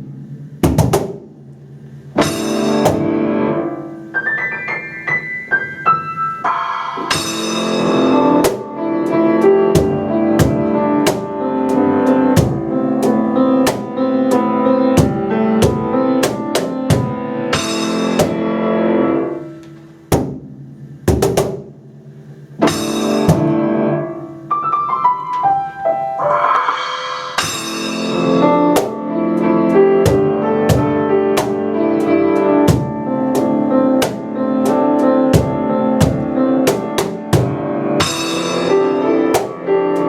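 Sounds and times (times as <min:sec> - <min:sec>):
rhythmic drum strokes: 0:00.0 - 0:24.5, 0:26.2 - 0:40.0
cymbal crashes: 0:01.2 - 0:03.2, 0:06.4 - 0:08.8, 0:17.5 - 0:18.5, 0:21.9 - 0:23.6, 0:26.2 - 0:29.0, 0:38.0 - 0:39.0
piano playing: 0:02.1 - 0:20.1, 0:22.5 - 0:40.0.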